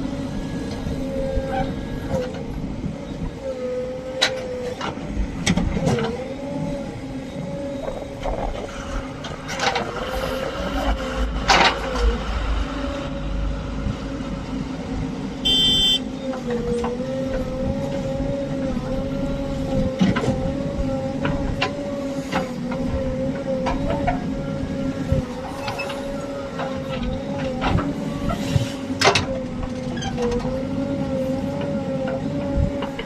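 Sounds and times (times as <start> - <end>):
diesel engine under load: 0.0 - 33.0
high-pitched beep: 15.5 - 16.0.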